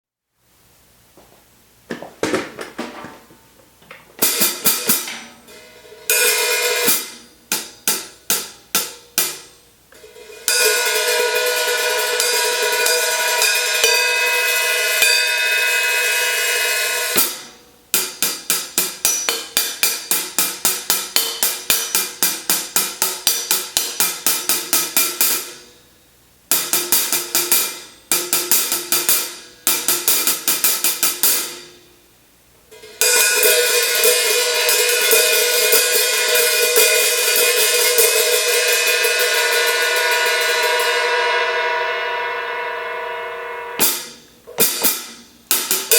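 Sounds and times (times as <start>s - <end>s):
open hi-hat wash: 4.2s - 45.9s
hi-hat strikes: 32.7s - 45.9s.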